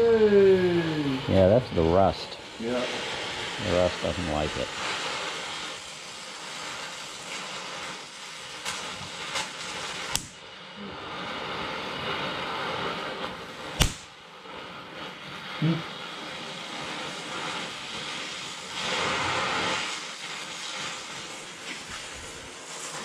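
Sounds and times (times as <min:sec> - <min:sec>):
welding torch flame hissing: 0:00.2 - 0:23.0
rust popping under flame: 0:03.0 - 0:10.5, 0:13.7 - 0:15.8.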